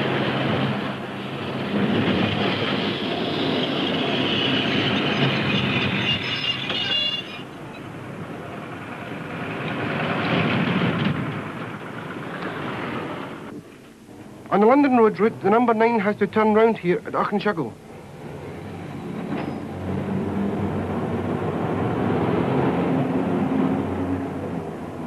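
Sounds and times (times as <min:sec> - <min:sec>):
wheels squealing on rail: 0:00.0 - 0:08.1, 0:18.4 - 0:20.6
tram wheels rumbling over track: 0:00.0 - 0:25.0.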